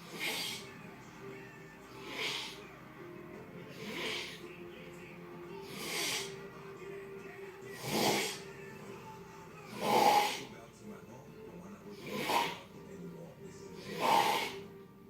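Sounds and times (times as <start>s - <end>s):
person snoring: 0.0s - 2.8s, 3.6s - 4.6s, 5.5s - 6.5s, 7.5s - 8.7s, 9.6s - 10.5s, 11.9s - 12.8s, 13.7s - 14.7s.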